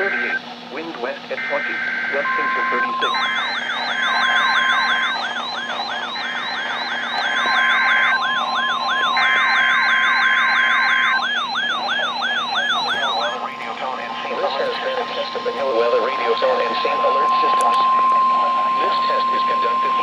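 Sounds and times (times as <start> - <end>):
buzzy data tones: 1.4 - 20.0
siren-like alarm sweeping down: 2.3 - 13.4.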